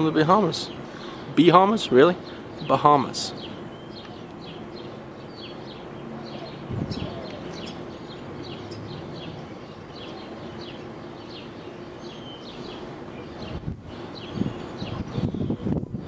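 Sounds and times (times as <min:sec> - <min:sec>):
small birds chirping: 0:00.0 - 0:16.0
steady low hum: 0:00.0 - 0:16.0
wind gust on microphone: 0:06.4 - 0:09.4, 0:13.3 - 0:16.0.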